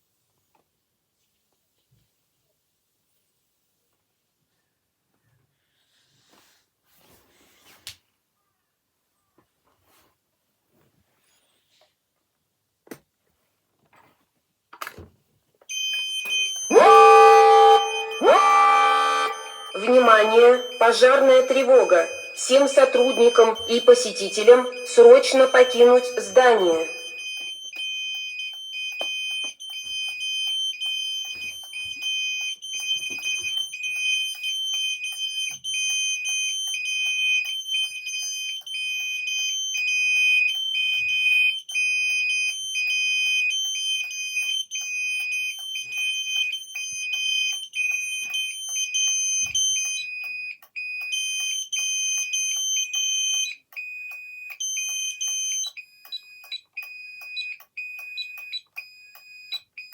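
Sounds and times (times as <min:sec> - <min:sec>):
fast high beeping alarm: 0:15.7 - 0:50.0
continuous high alarm tone: 0:15.7 - 0:59.9.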